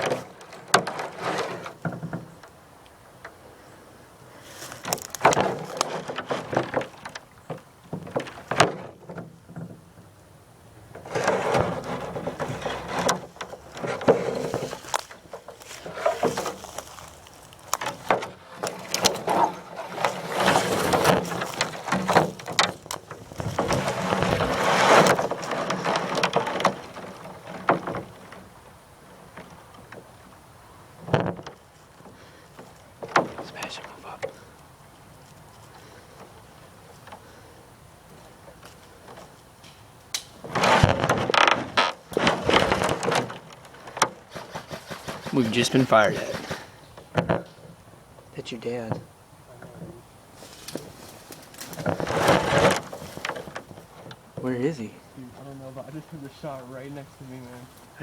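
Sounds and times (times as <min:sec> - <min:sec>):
rustling through dry leaves: 0:04.2 - 0:07.0, 0:11.1 - 0:29.7, 0:49.9 - 0:58.0
twigs snapping and knocks: 0:04.6 - 0:06.2, 0:14.6 - 0:19.4, 0:21.0 - 0:26.7, 0:39.6 - 0:44.0, 0:50.4 - 0:53.4.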